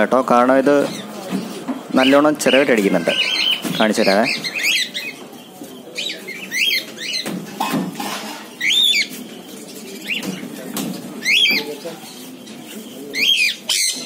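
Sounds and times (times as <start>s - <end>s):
parrot chick squawking: 2.0s - 5.2s.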